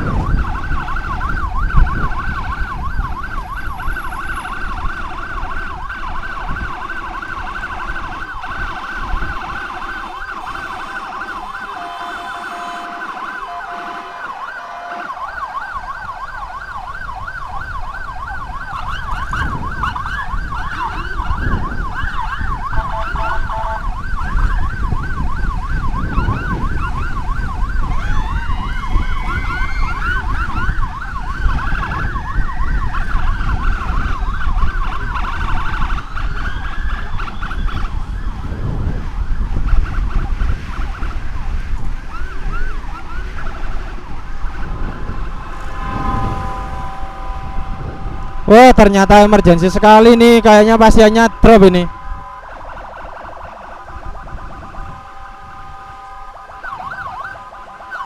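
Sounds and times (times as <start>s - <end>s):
road and wind rumble: 0.0s - 58.0s
siren wailing slowly: 0.0s - 58.0s
siren yelping: 0.0s - 58.0s.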